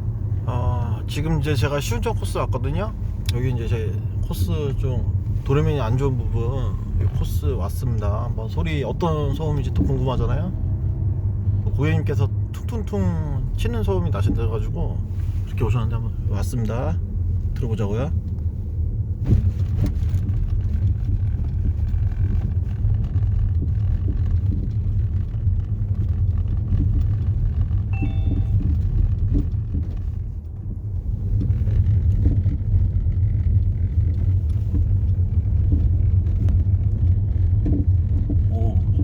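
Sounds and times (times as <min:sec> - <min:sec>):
road and tyre rumble: 0:00.0 - 0:39.0
suspension knocks: 0:19.2 - 0:39.0.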